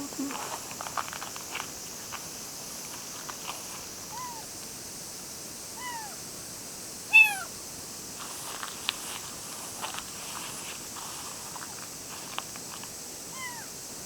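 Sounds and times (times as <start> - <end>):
kitten meowing: 4.1 - 4.5, 5.8 - 6.2, 7.1 - 7.5, 13.3 - 13.7.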